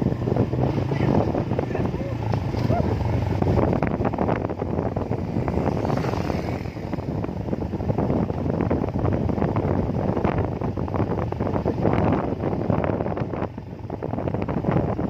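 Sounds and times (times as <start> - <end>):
vehicle rumble: 0.0 - 15.0
wind buffeting microphone: 0.0 - 15.0.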